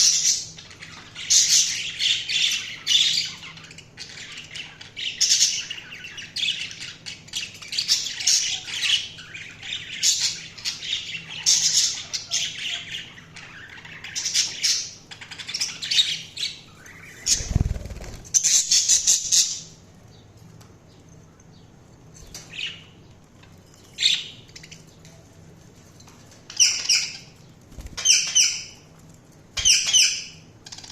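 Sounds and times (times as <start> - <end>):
budgerigars chirping and squawking: 0.0 - 19.8, 26.5 - 28.8, 29.6 - 30.9.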